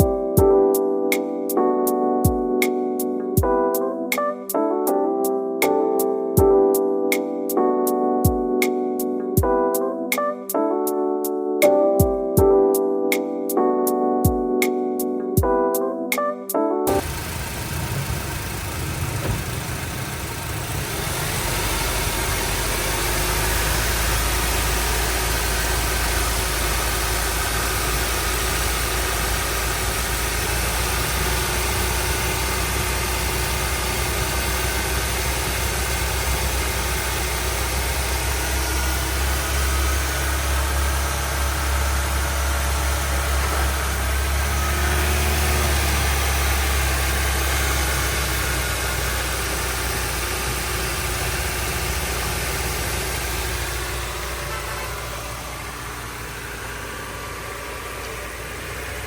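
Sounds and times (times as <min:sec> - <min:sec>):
car engine idling: 0:16.9 - 0:59.0.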